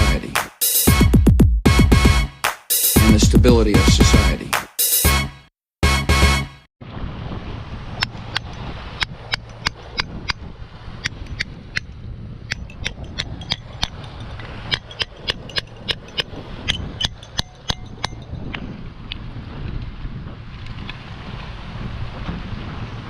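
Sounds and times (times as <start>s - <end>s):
low wind rumble: 6.8s - 23.0s.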